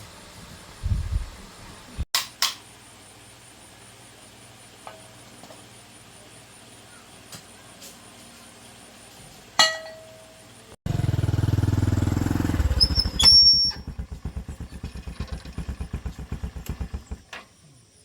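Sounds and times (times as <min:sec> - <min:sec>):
metal clink: 0:09.6 - 0:10.3
motorbike engine running: 0:10.9 - 0:17.3
high squeal: 0:12.6 - 0:14.0.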